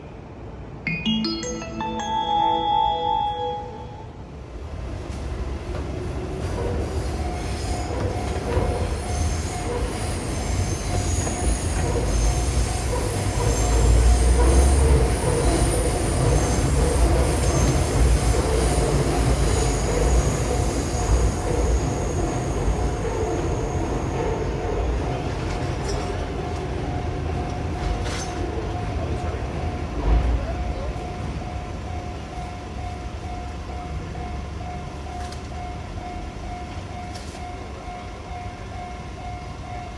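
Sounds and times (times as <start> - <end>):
intro music: 0.9 - 4.3
train wheels rumbling on rails: 4.7 - 39.9.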